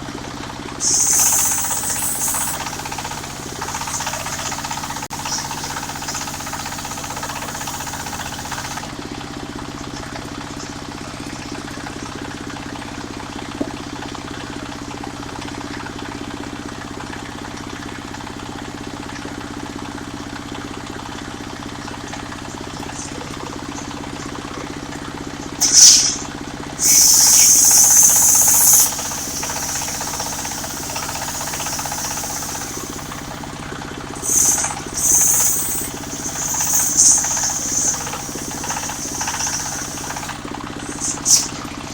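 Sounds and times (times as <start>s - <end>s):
sawmill engine running: 0.7s - 9.0s, 25.6s - 41.9s
saw blade cutting wood: 0.8s - 8.9s, 25.6s - 41.6s.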